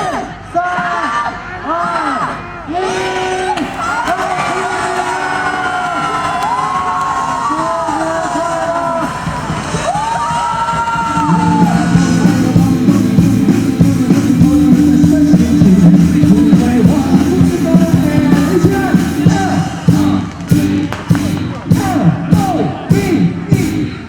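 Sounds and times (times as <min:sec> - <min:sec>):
held vocal note: 0:11.0 - 0:20.8
sharp drum hits: 0:11.0 - 0:23.9
rock band playing live: 0:11.0 - 0:24.0.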